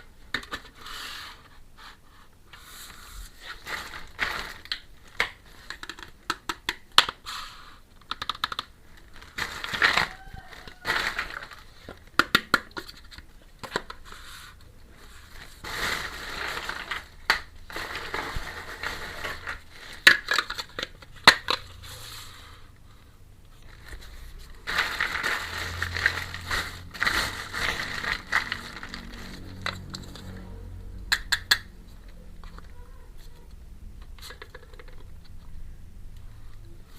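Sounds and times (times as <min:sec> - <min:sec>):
packaging crinkling: 0:03.4 - 0:06.2, 0:08.1 - 0:14.2, 0:15.0 - 0:22.1, 0:23.5 - 0:30.5
plastic toy pieces clicking: 0:08.0 - 0:08.8.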